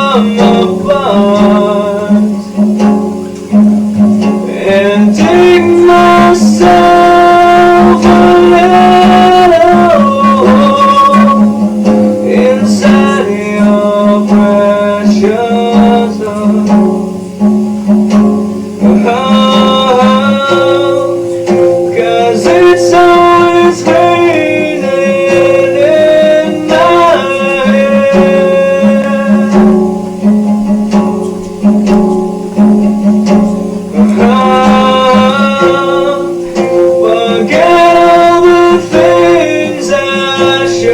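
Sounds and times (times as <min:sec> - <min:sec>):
blues slide guitar: 0:00.0 - 0:40.9.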